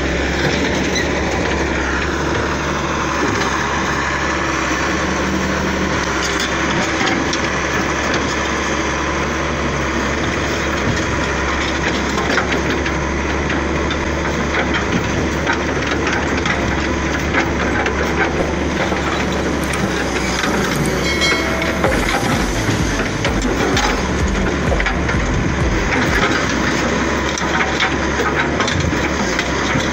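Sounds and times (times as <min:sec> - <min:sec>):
excavator diesel engine running: 0:00.0 - 0:29.9
machine knocks and clanks: 0:10.2 - 0:29.9.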